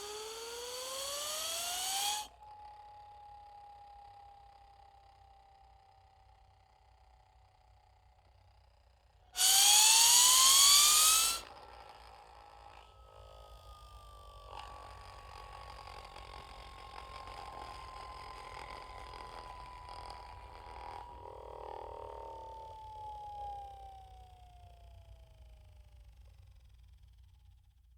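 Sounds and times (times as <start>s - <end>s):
rising whistle: 0.0s - 2.3s, 9.4s - 11.5s, 16.9s - 25.3s
faint falling whistle tone: 0.0s - 3.8s, 9.4s - 11.4s, 16.9s - 25.6s.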